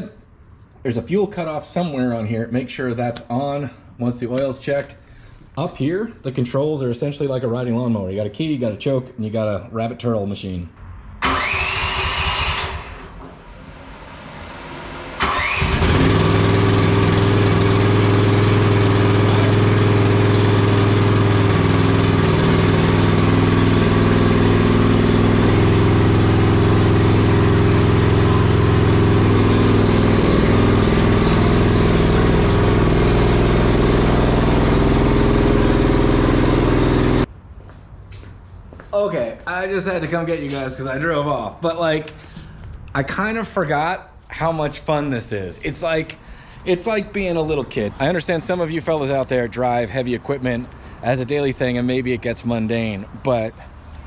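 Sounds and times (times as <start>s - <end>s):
small gas engine running: 11.2s - 13.1s, 15.1s - 37.3s.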